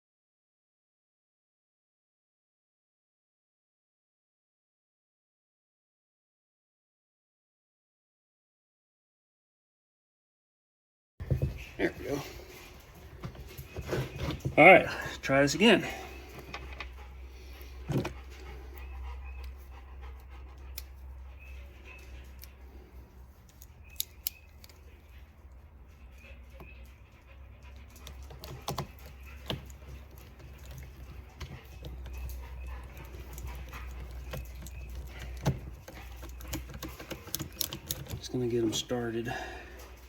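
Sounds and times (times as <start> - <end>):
dog panting: 11.3 - 40.0
sharp clicks and knocks: 27.8 - 38.3.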